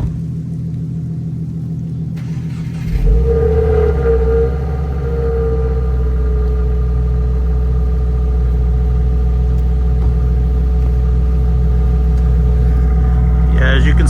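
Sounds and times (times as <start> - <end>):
car engine idling: 2.0 - 14.0.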